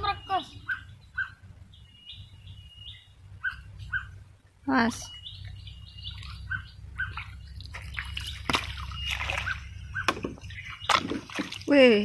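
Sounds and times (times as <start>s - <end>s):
bird chirps: 0.0s - 11.4s
water sloshing and dripping: 5.4s - 12.0s.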